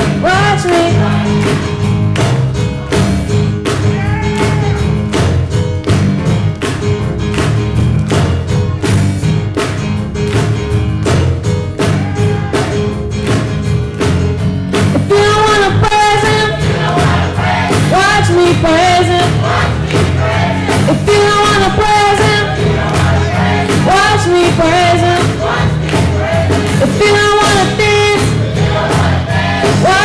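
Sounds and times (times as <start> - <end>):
bass line: 0.0 - 30.0
drum kit beat: 0.0 - 30.0
gospel band playing: 0.0 - 30.0
choir singing: 0.6 - 1.7, 16.2 - 27.2, 27.8 - 30.0.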